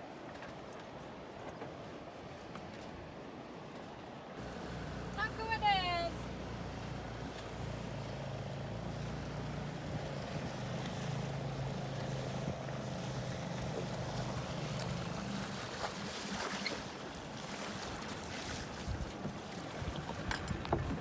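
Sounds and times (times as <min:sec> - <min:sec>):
wind: 0:00.0 - 0:21.0
outboard motor running: 0:04.4 - 0:21.0
water slapping and splashing: 0:04.4 - 0:21.0.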